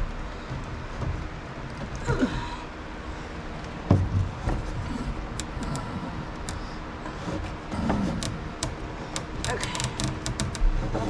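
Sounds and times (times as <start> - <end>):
steady low hum: 0.0 - 11.0
wire creaking and scraping: 4.4 - 11.0
light clicks: 5.3 - 6.8.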